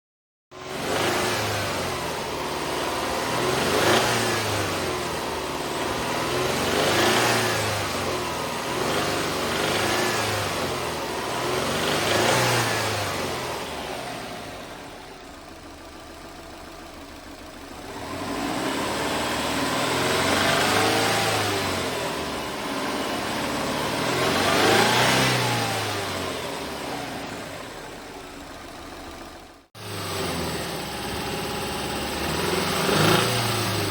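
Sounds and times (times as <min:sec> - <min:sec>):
car engine revving: 0:00.6 - 0:15.3, 0:16.9 - 0:33.9
car engine idling: 0:00.8 - 0:21.0, 0:25.6 - 0:33.9.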